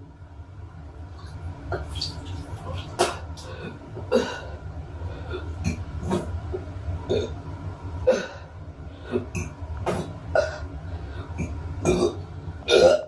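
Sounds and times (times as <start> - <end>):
low steady rumble: 0.0 - 13.0
coughing hiccup-like gulps: 1.7 - 4.4, 5.6 - 6.4, 9.1 - 10.8, 11.4 - 13.0
person burping: 11.4 - 13.0.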